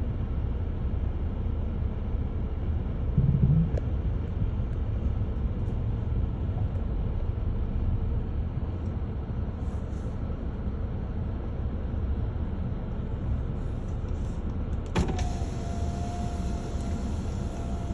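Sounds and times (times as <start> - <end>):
low outdoor rumble: 0.0 - 14.9
steady mid-pitched tone: 3.2 - 4.0.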